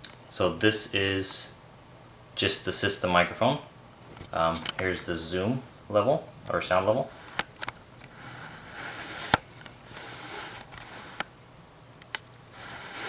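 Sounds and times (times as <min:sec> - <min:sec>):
lens zoom ring rubbing hiss: 0:07.0 - 0:13.0
sharp lens clicks: 0:07.1 - 0:13.0.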